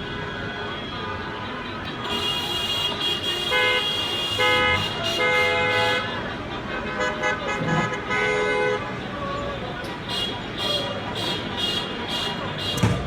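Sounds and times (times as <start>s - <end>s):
street noise: 0.0s - 13.0s
car horns honking: 0.6s - 8.9s, 9.9s - 13.0s.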